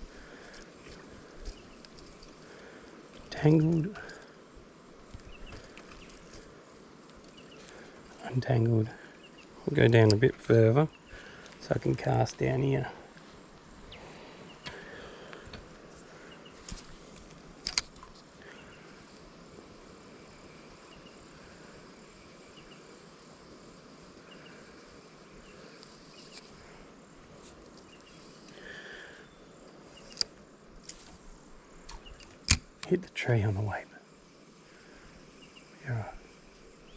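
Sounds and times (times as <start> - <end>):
insects chirping: 0.0 - 36.9
sharp clicks: 16.6 - 18.2.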